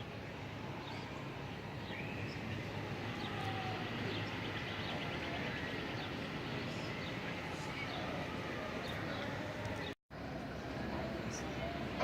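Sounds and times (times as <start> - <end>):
birds chirping: 0.3 - 10.0.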